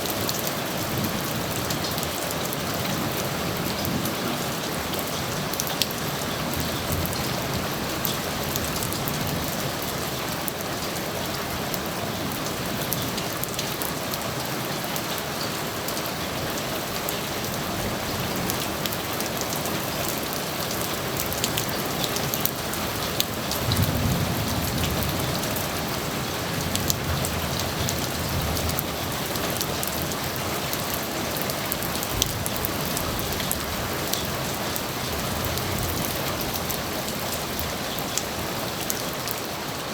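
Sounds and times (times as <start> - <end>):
heavy rain falling: 0.0 - 39.9
distant thunder rumble: 22.8 - 30.1.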